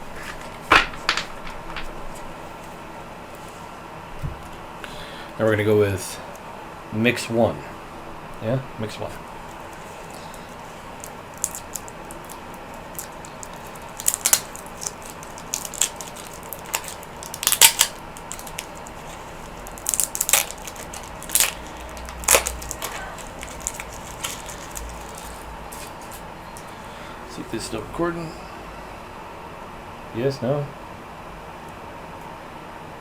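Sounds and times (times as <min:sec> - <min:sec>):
cards and packaging crinkling: 0:00.0 - 0:02.8, 0:09.4 - 0:26.9.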